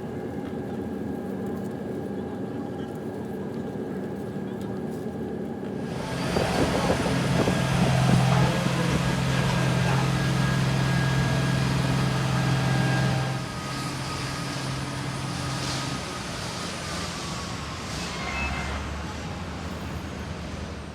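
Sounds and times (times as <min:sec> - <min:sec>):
jet engine hum in cabin: 0:00.0 - 0:20.9
airflow rush: 0:05.8 - 0:17.5
falling engine whine: 0:05.8 - 0:20.6.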